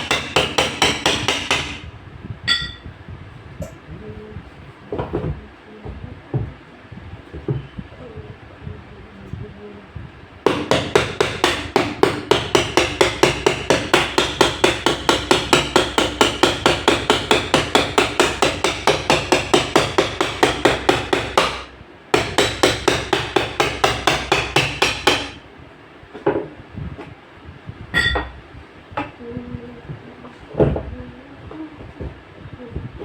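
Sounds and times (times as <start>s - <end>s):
rapid hammer blows: 0.0s - 1.9s, 10.5s - 25.4s.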